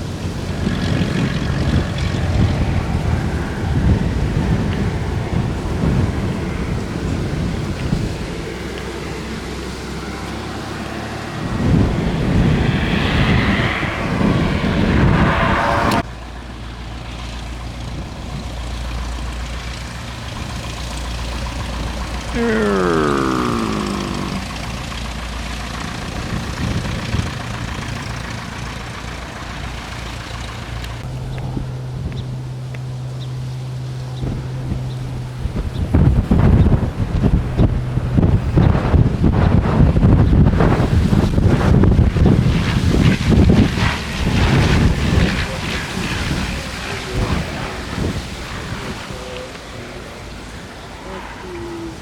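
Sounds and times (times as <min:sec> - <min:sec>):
wind buffeting microphone: 0:00.0 - 0:08.4, 0:11.4 - 0:16.0, 0:34.2 - 0:46.6
propeller plane passing by: 0:00.0 - 0:17.9.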